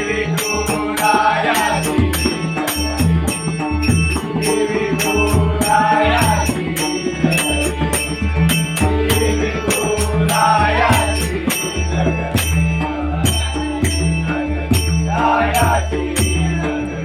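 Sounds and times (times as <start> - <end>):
pakhawaj drumming: 0.0 - 17.0.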